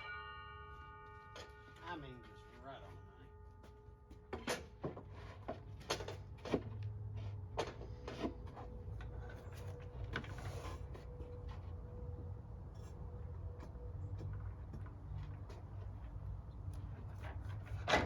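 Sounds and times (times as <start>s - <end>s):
knocks of wooden workpieces: 4.1s - 6.7s.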